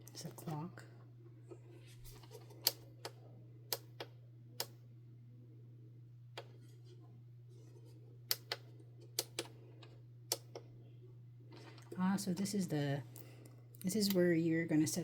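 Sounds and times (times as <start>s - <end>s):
timer buttons clicking: 8.3s - 8.6s, 10.3s - 10.6s.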